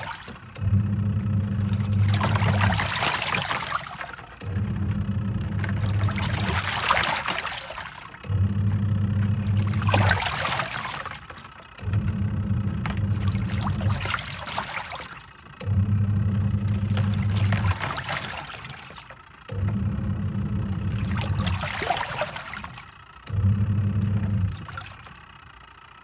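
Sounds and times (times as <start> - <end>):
water sloshing in tub: 0.0 - 25.8
washing machine motor humming: 0.0 - 26.0.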